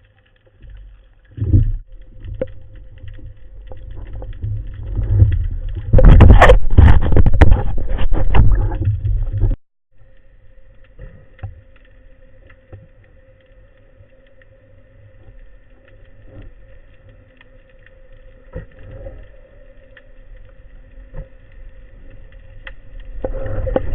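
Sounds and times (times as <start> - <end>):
small underwater clicks: 0.0 - 23.9
water rushing and bubbling: 0.8 - 9.6, 14.1 - 23.9
faint underwater hum: 10.0 - 23.9.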